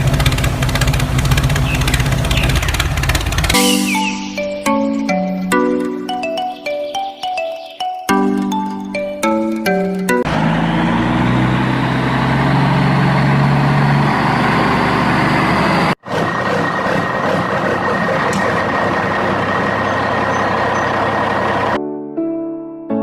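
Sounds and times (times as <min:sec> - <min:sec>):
machine running with low hum: 0:16.1 - 0:21.8.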